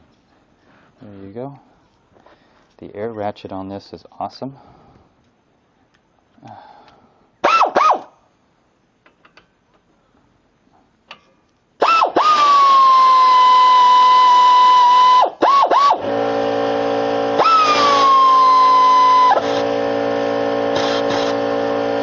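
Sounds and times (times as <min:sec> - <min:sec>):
air ratchet whining: 0:11.8 - 0:22.0.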